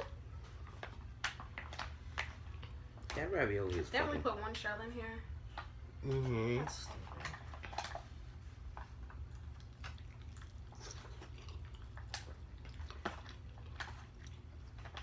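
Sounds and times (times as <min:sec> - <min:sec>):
person chewing: 0:07.1 - 0:15.0.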